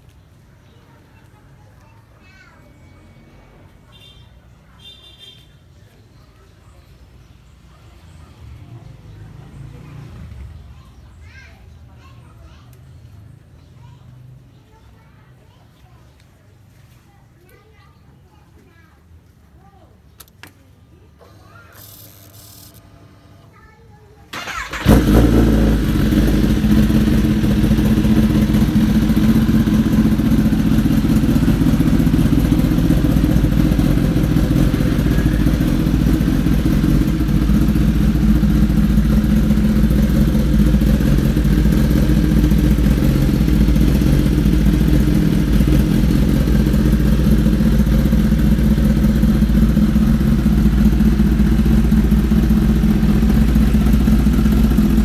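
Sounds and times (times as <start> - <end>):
motorcycle engine idling: 24.4 - 55.0.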